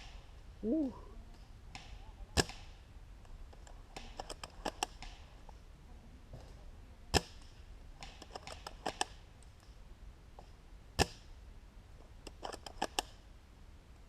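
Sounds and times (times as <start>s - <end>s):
quick runs of clicks: 12.2s - 13.2s.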